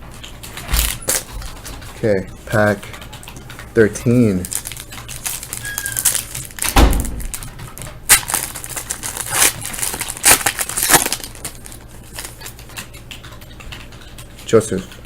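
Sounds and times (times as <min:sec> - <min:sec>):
wrapper tearing and crinkling: 0:04.3 - 0:07.5, 0:08.1 - 0:12.5.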